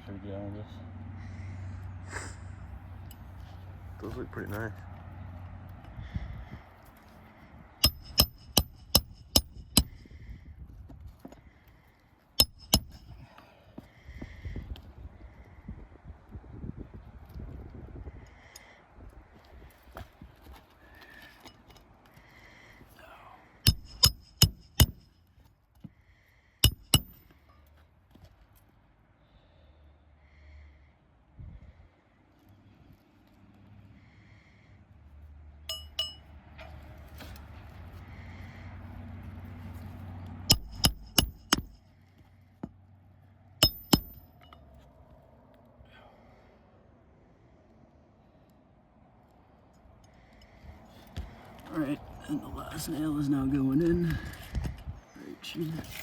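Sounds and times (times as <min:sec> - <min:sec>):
hammer striking roofing nails: 0:07.8 - 0:10.0, 0:12.4 - 0:13.2, 0:23.7 - 0:25.1, 0:26.6 - 0:27.2, 0:40.5 - 0:41.8, 0:43.6 - 0:44.2.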